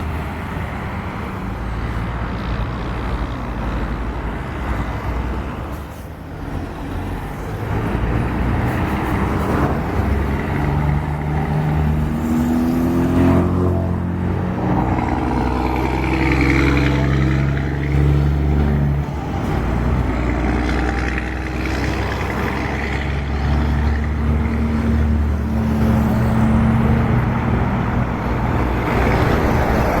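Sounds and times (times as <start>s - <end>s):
truck engine revving: 6.4s - 30.0s.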